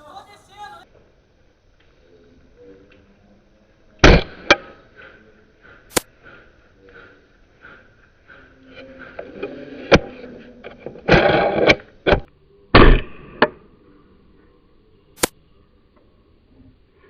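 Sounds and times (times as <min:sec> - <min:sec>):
loud scraping bursts: 0:08.3 - 0:12.3.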